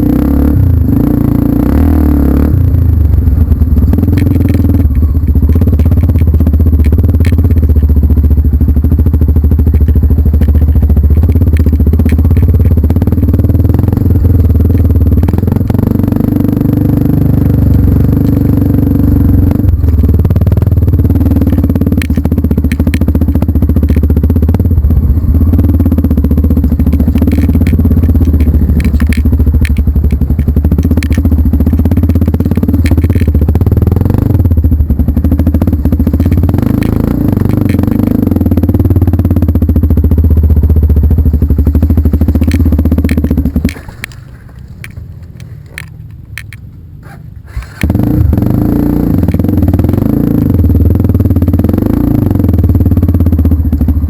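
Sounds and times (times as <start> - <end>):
vehicle engine rumbling: 0.0 - 54.0
rattling clicks: 3.6 - 7.9, 21.3 - 24.2, 26.4 - 34.4, 35.2 - 38.5, 41.2 - 48.5.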